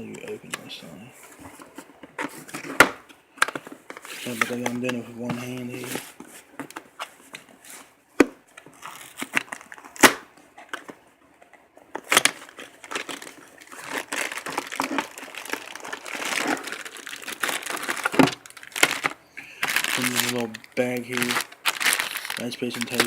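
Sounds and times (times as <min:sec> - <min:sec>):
packaging crinkling: 0:08.6 - 0:11.0, 0:11.9 - 0:23.0.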